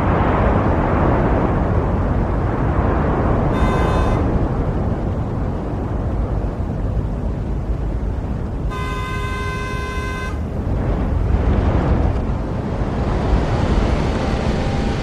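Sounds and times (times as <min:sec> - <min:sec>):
road traffic rumble: 0:00.0 - 0:15.0
car horn blast: 0:03.5 - 0:04.4, 0:08.7 - 0:10.4.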